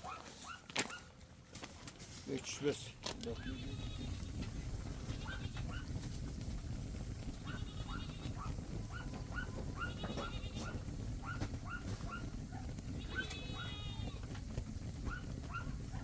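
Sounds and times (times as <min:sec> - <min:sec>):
steady low rumble: 0:02.9 - 0:16.0
goats bleating: 0:03.3 - 0:05.8, 0:07.3 - 0:08.5, 0:09.8 - 0:10.9, 0:13.0 - 0:14.3.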